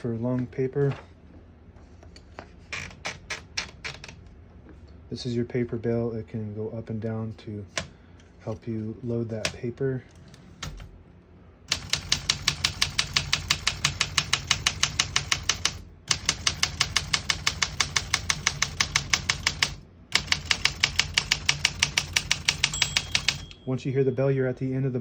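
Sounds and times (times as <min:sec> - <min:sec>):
typewriter typing: 0:02.7 - 0:04.2, 0:11.7 - 0:23.6.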